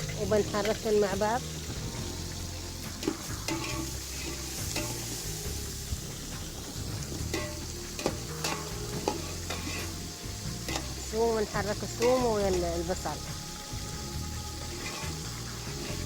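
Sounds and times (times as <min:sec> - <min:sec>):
spoon scraping a pot: 0:00.0 - 0:11.1, 0:14.5 - 0:16.0
onions sizzling in oil: 0:00.0 - 0:16.0.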